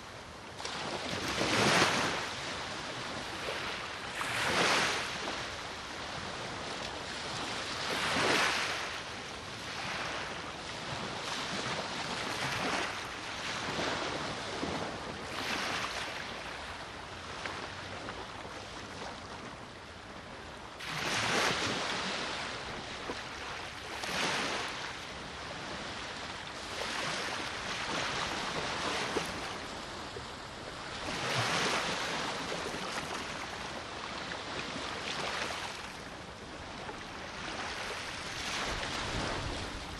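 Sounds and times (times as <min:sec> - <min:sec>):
small waves breaking on shore: 0:00.0 - 0:39.9.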